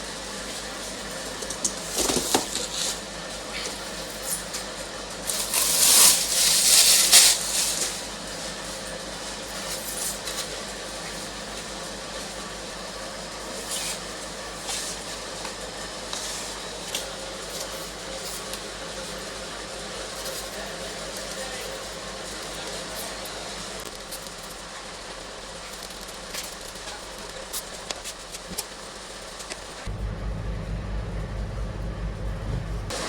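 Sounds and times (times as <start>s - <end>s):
packaging rustling and scraping: 5.2s - 8.6s.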